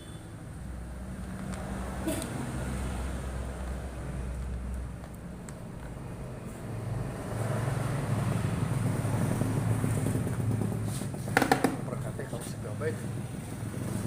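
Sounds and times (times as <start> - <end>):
sharp knock: 11.3 - 11.9.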